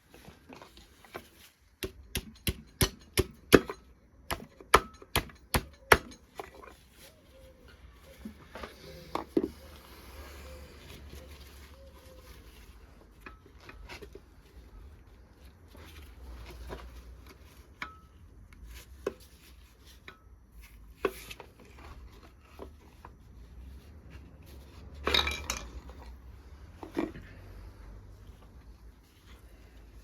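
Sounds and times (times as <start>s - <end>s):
metal tools clinking and tapping: 1.9s - 6.8s, 25.0s - 26.1s.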